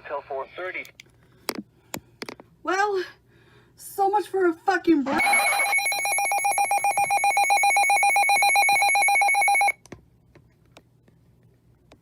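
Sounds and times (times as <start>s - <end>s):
rapid pulsing alarm tone: 5.2s - 9.8s.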